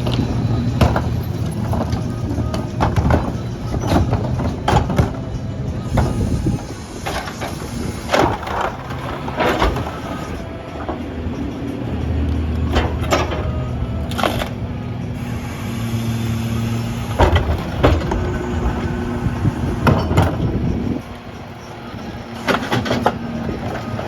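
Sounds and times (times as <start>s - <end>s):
metallic clanks and bangs: 0.0s - 15.3s, 16.2s - 24.0s
garbage truck engine running: 0.0s - 24.0s.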